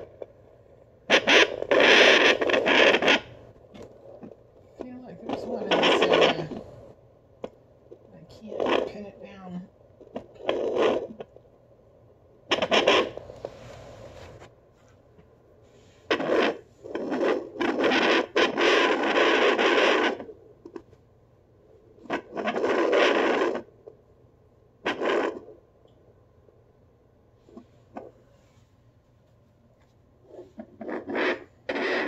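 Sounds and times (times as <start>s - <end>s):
doppler probe scraping noise: 0.0s - 7.0s, 8.2s - 11.5s, 12.5s - 14.6s, 15.7s - 20.4s, 22.0s - 23.7s, 30.2s - 32.0s.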